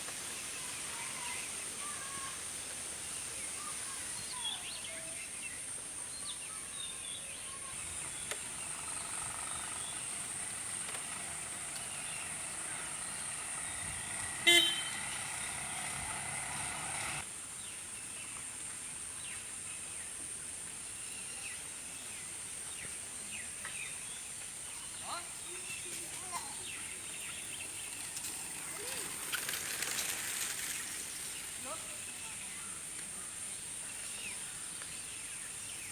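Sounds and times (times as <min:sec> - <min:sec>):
vehicle engine running: 0:08.0 - 0:17.2
short horn honk: 0:14.4 - 0:15.4.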